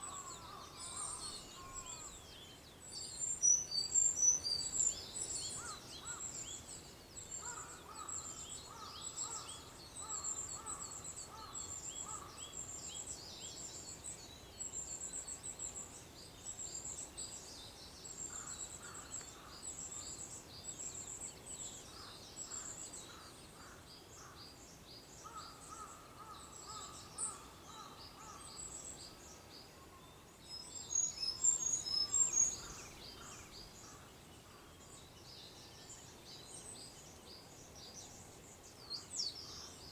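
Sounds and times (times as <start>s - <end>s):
songbirds chirping and singing: 0.0s - 12.7s, 30.1s - 34.2s.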